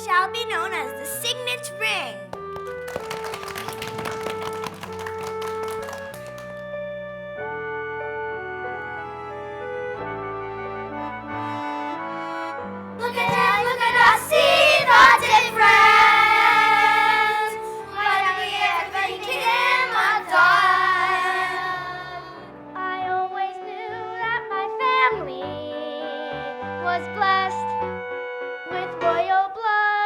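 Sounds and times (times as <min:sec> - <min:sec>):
musical accompaniment: 0:00.0 - 0:29.4
young voices singing: 0:13.0 - 0:22.4.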